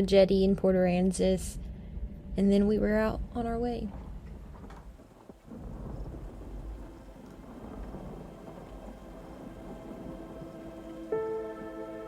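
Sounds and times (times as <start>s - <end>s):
low steady boat rumble: 5.4s - 12.0s
faint music: 6.1s - 12.0s.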